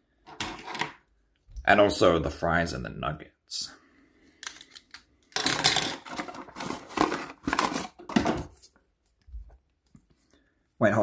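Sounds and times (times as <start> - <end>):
plastic packaging rustling and clicking: 4.4 - 9.6.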